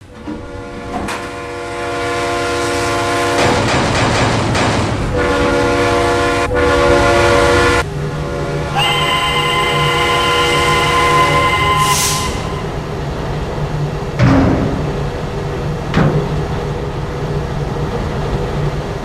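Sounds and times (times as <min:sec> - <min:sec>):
train rumble and clatter: 0:00.0 - 0:19.0
train horn chord: 0:00.1 - 0:03.6, 0:05.1 - 0:12.8.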